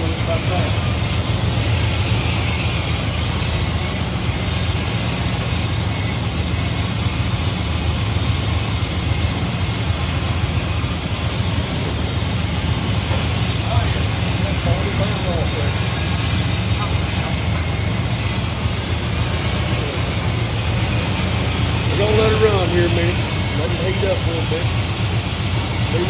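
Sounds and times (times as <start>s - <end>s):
man talking: 0.0s - 1.0s, 13.6s - 15.9s, 21.8s - 24.8s
engine idling: 0.0s - 26.0s.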